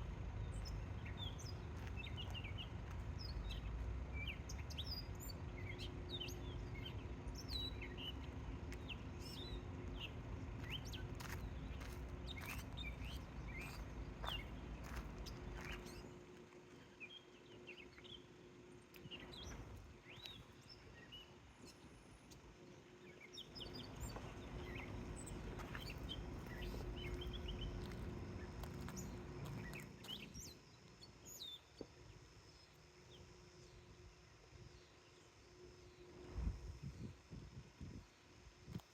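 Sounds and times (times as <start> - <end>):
low background rumble: 0.0 - 38.8
faint steady hum: 0.0 - 38.9
small birds chirping: 0.0 - 38.9.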